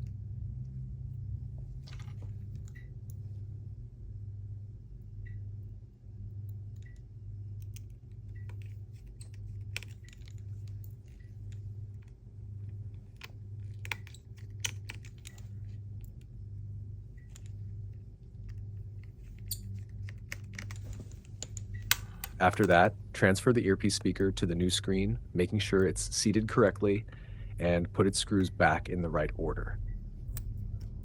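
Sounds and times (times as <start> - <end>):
steady low hum: 0.0 - 31.0
metal tools clicking and tapping: 7.6 - 12.1, 12.9 - 16.2, 18.5 - 22.9.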